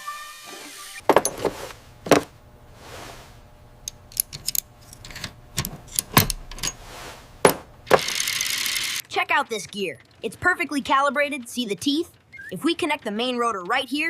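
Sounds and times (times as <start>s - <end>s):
metallic clicks of small parts: 3.8s - 6.8s.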